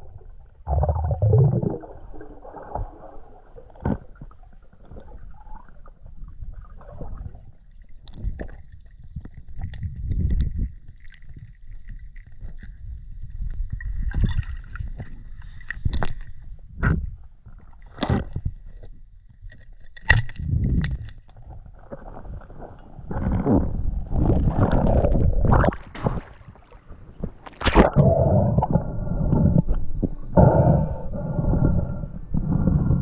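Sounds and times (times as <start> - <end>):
water gurgling surges: 0.0 - 3.4
underwater muffled rumble: 0.0 - 19.1, 20.4 - 33.0.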